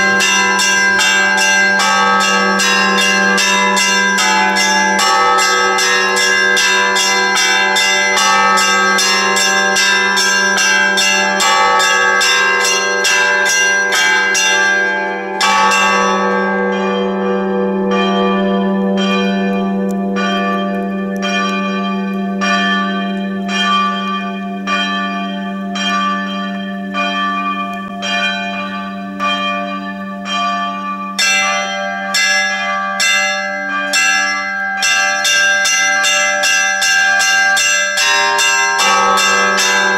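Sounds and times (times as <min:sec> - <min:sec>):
church bells ringing in a peal: 0:00.0 - 0:39.9.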